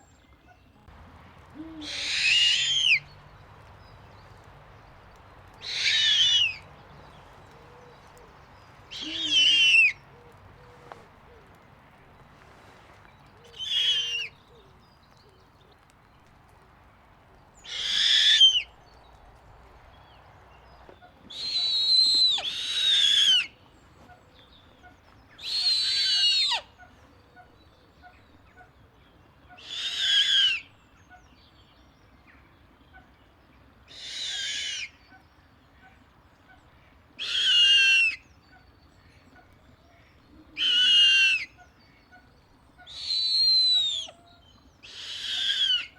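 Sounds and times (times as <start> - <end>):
owl giving raspy screeching calls: 1.6 - 3.1, 5.6 - 6.7, 8.9 - 10.0, 13.5 - 14.3, 17.6 - 18.7, 21.3 - 23.6, 25.4 - 26.8, 29.6 - 30.7, 33.9 - 35.0, 37.2 - 38.3, 40.4 - 41.6, 42.8 - 45.9.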